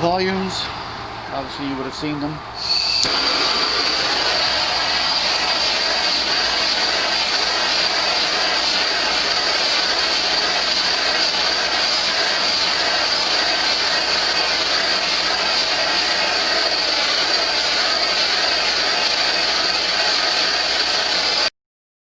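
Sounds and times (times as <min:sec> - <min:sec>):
high whine: 0:02.5 - 0:21.5
small machine running: 0:02.6 - 0:21.5.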